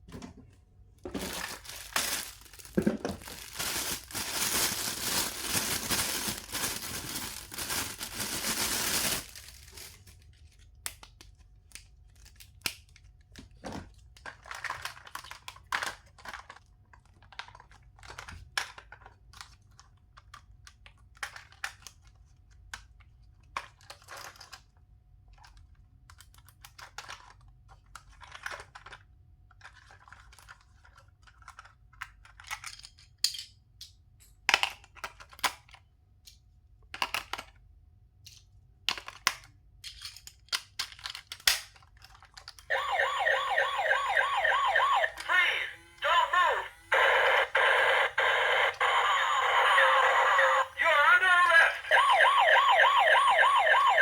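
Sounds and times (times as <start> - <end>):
plastic packaging clicks and rustles: 1.0 - 33.2, 38.4 - 42.7
toy warbling siren sound: 42.7 - 54.0.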